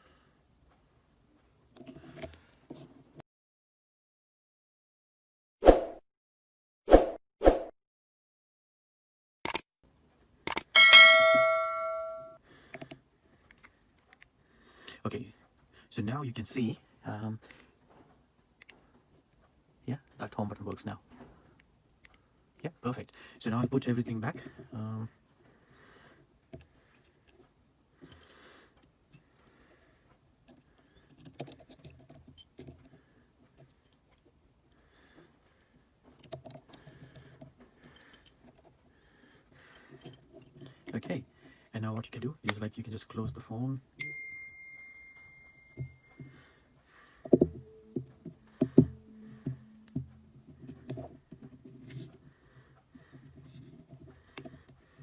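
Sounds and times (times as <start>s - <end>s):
phone and tools clicking: 9.4s - 9.6s, 10.5s - 13.7s, 44.0s - 52.2s
sharp knocks with ringing tone: 10.8s - 12.4s, 47.4s - 50.2s
small tools clicking and tapping: 26.5s - 41.6s, 45.2s - 55.0s.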